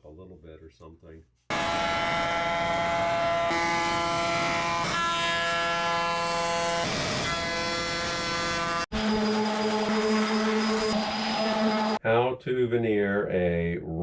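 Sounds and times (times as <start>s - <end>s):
wood router whining: 1.5s - 12.0s.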